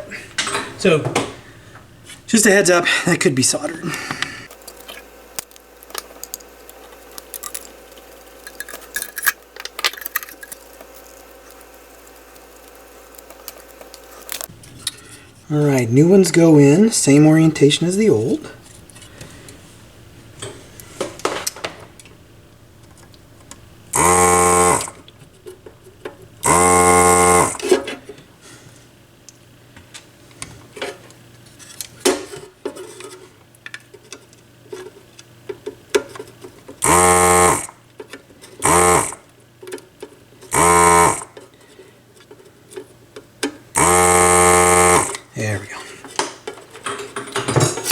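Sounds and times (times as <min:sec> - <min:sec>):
vacuum pump buzzing with air suction: 0:00.0 - 0:28.2, 0:36.8 - 0:37.8, 0:38.6 - 0:39.3, 0:40.5 - 0:41.6, 0:43.7 - 0:45.4
hand tools clicking: 0:03.9 - 0:27.8.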